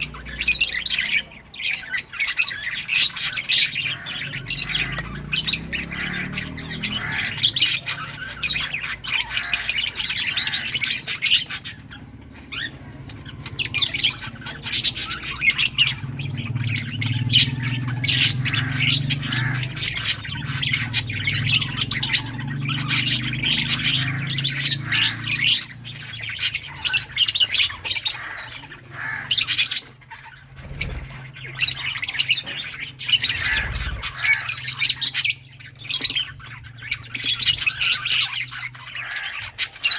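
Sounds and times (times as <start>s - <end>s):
lovebirds chirping and squawking: 0.0s - 39.9s.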